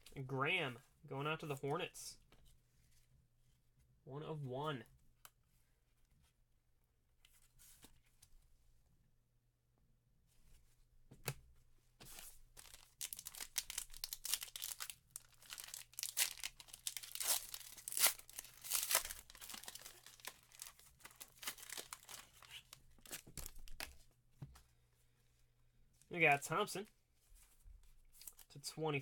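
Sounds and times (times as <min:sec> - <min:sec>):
plastic packaging crinkling: 0:12.6 - 0:24.0.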